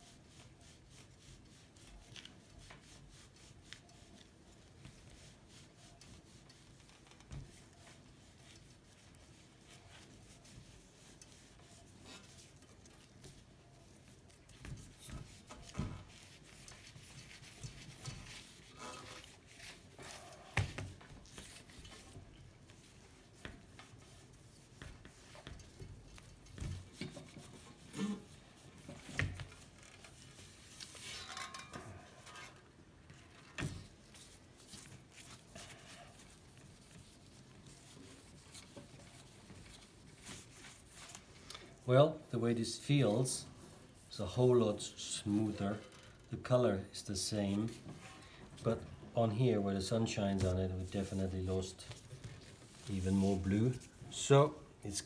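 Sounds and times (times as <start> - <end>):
hand scrubbing steel tubes: 0.1 - 32.6.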